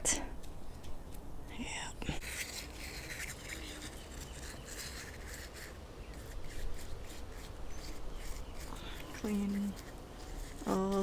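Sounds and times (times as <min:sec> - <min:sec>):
brush scrubbing metal: 0:02.2 - 0:11.0.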